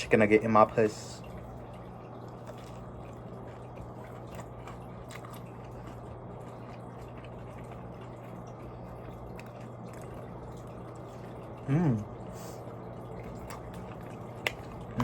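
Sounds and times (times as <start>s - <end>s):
steady low hum: 0.0s - 15.0s
person chewing: 2.1s - 12.1s, 13.2s - 15.0s.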